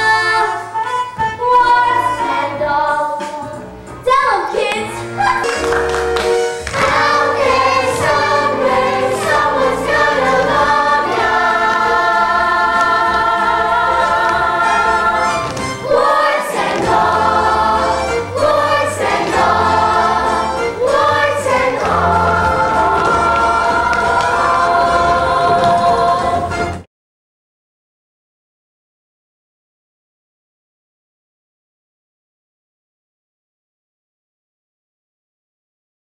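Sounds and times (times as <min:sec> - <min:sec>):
instrumental accompaniment: 0:00.0 - 0:26.9
cast singing in chorus: 0:06.8 - 0:26.6.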